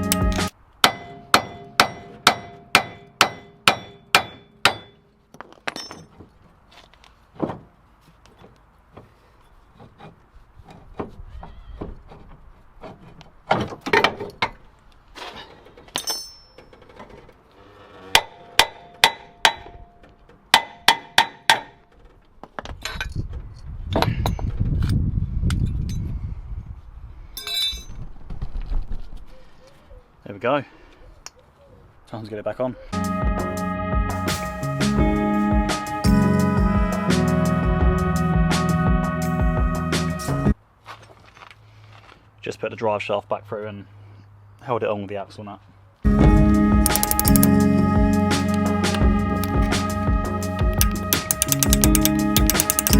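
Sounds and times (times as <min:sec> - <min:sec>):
hammer striking metal: 0:00.8 - 0:05.0.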